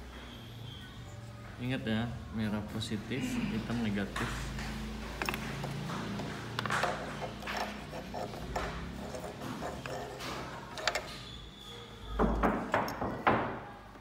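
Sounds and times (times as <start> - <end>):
hands handling wiring: 4.1 - 11.2.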